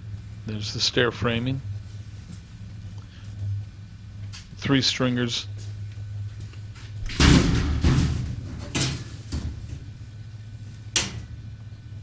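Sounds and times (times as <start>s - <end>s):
steady low hum: 0.0s - 12.0s
thuds and knocks: 7.1s - 9.6s.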